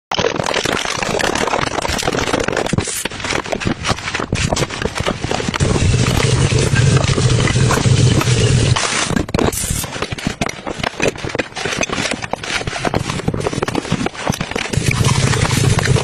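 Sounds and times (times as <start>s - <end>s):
low pulsing squish: 5.5s - 9.9s, 14.7s - 16.0s.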